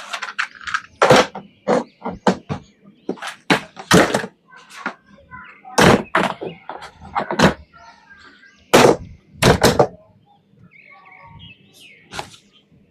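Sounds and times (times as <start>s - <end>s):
sharp knocks or thuds: 8.7s - 10.0s.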